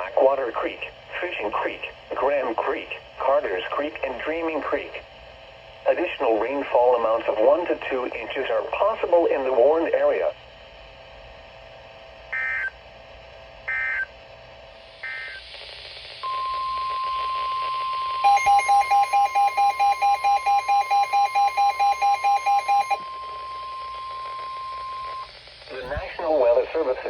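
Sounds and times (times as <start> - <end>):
fast electronic beeping: 18.2 - 23.7.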